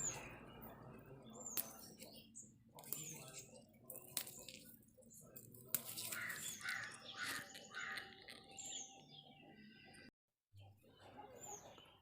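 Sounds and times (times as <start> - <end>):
bird making harsh calls: 6.1 - 8.3.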